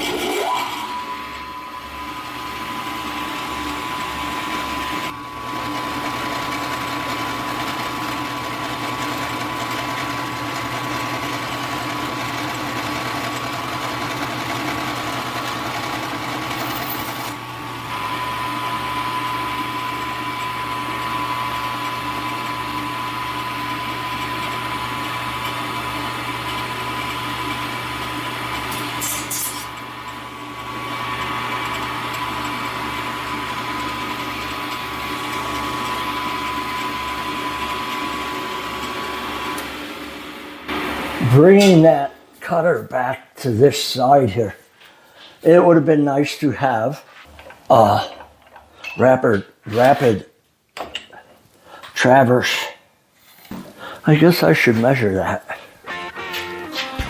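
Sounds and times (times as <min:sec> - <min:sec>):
milling machine whining: 0:00.0 - 0:42.7, 0:55.8 - 0:57.0.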